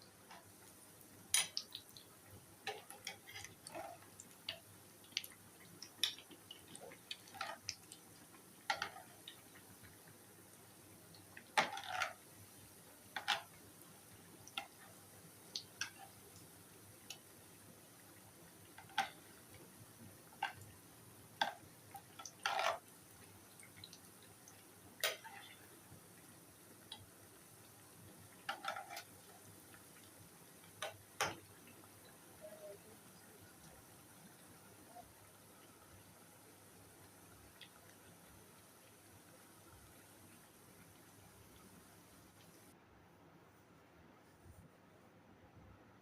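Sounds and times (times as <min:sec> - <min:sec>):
kitchen utensils and dishes clicking: 0:01.3 - 0:01.7.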